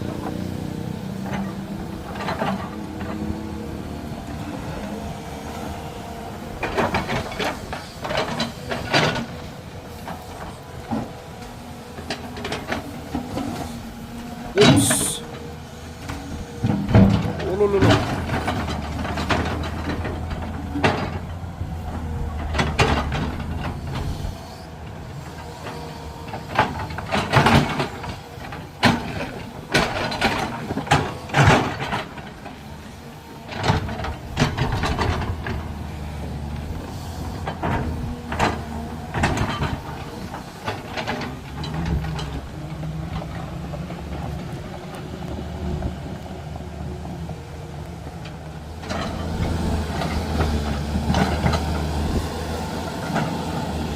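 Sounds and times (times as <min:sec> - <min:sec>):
heavy diesel machinery running: 0:00.0 - 0:53.9
sharp knocks and clanks: 0:16.6 - 0:24.2.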